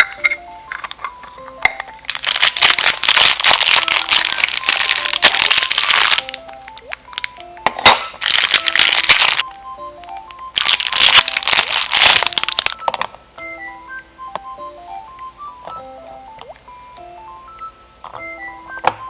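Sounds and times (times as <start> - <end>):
light music with plinking notes: 0.0 - 19.0
dense crackling clicks: 2.1 - 7.3.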